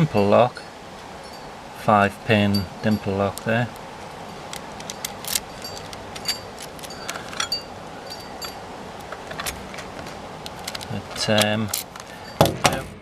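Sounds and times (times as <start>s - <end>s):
metal lock clicking and clinking: 4.5s - 12.8s.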